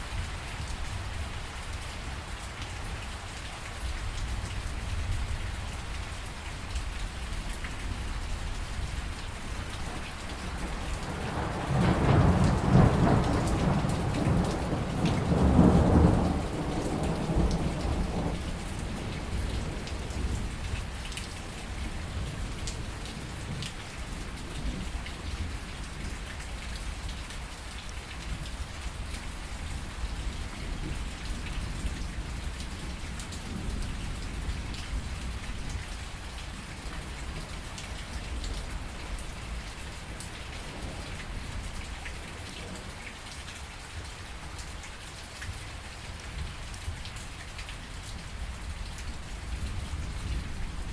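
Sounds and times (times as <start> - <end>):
steady rain falling: 0.0 - 50.9
rolling thunder: 10.4 - 20.5.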